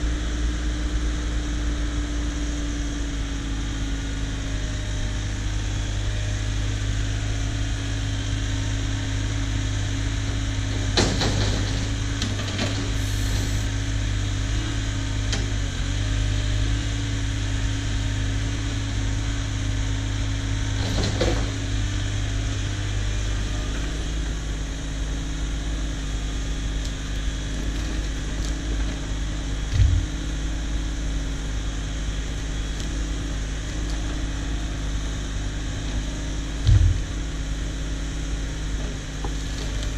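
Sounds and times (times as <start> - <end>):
excavator diesel engine running: 0.0 - 39.9
knocks: 36.6 - 37.1.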